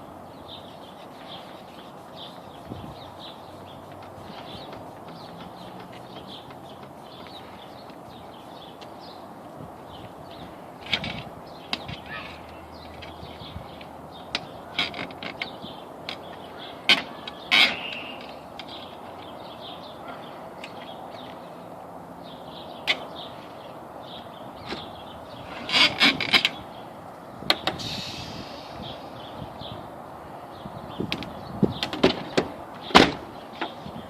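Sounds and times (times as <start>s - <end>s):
steady hiss: 27.7s - 30.3s.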